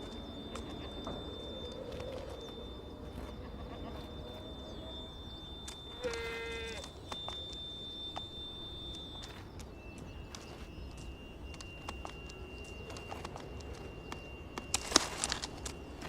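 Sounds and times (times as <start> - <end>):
sharp clicks: 0.0 - 16.0
thin steady high tone: 0.0 - 16.0.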